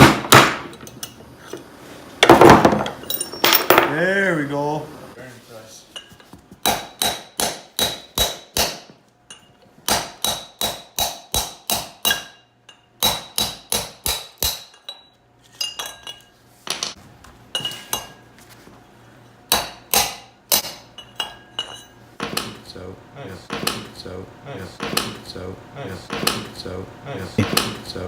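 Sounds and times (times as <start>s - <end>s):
hammer striking metal: 6.6s - 12.4s, 13.0s - 14.9s, 19.5s - 21.4s.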